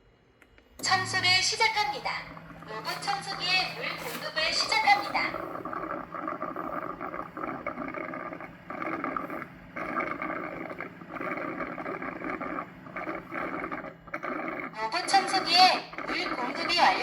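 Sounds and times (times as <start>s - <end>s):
low hum: 0.4s - 17.0s
water pump churning and gurgling: 0.8s - 17.0s.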